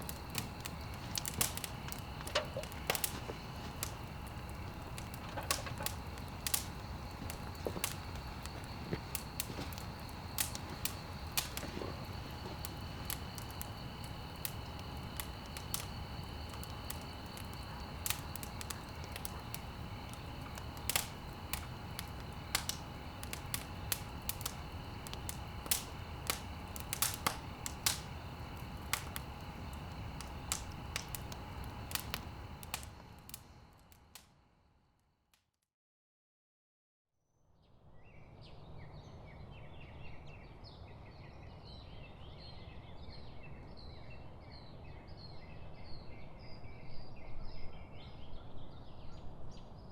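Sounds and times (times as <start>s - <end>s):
campfire crackling: 0.0s - 34.3s.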